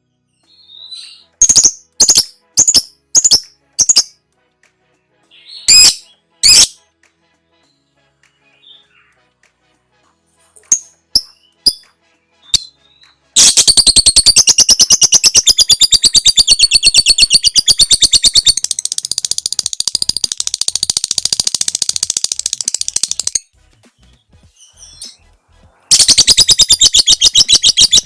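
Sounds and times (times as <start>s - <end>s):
bird chirps and chattering trill: 0.6s - 4.1s, 13.4s - 23.5s, 25.9s - 28.0s.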